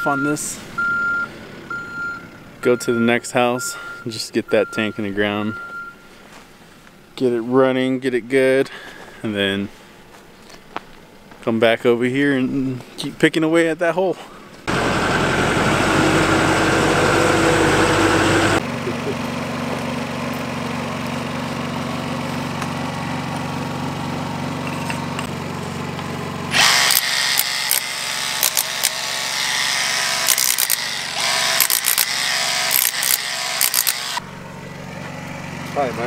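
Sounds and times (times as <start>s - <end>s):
engine running steadily: 14.6s - 36.0s
power tool cutting stone: 14.7s - 18.6s, 26.5s - 34.2s.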